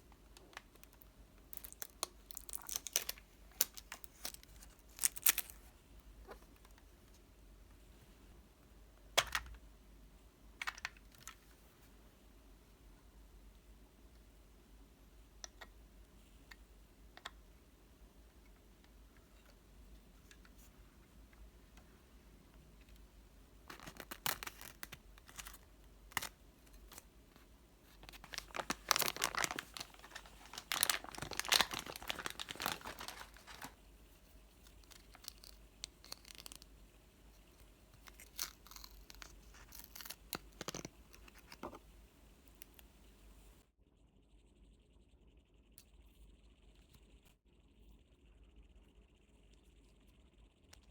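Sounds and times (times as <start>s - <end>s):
packaging tearing and crinkling: 0.7s - 5.6s, 23.7s - 27.0s, 28.0s - 33.8s, 34.6s - 36.7s, 38.0s - 41.7s.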